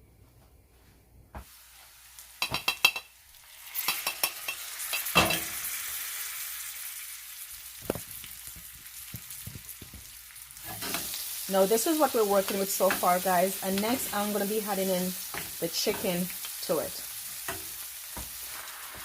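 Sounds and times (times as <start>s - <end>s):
onions sizzling in oil: 1.4s - 19.0s
spoon knocking against pan: 2.4s - 3.1s.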